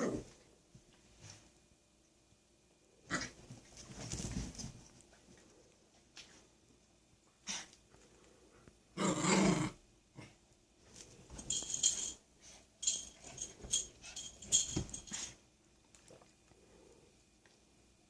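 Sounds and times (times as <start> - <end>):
dog growling: 9.0 - 10.4.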